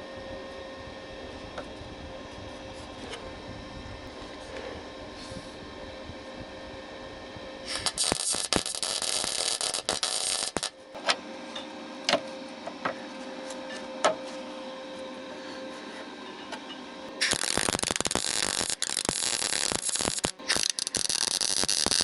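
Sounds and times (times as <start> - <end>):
steady low hum: 0.0 - 22.0
welder crackling hiss: 7.7 - 10.7, 17.2 - 22.0.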